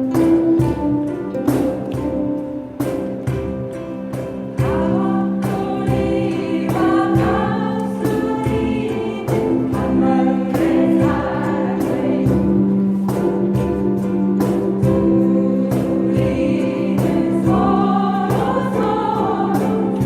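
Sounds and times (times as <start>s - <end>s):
instrumental accompaniment with beat: 0.0s - 20.0s
group of voices singing: 4.6s - 20.0s.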